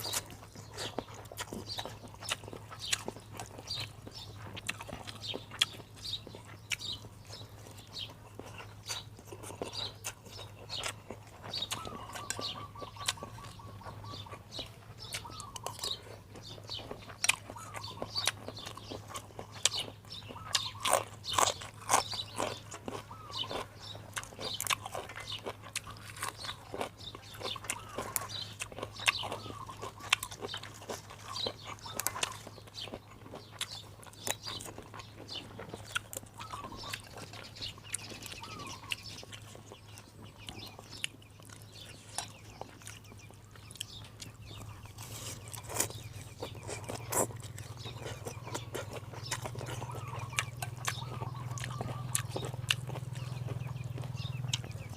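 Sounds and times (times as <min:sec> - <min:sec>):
chewing and crunching: 0:00.0 - 0:54.9
steady low hum: 0:00.0 - 0:54.9.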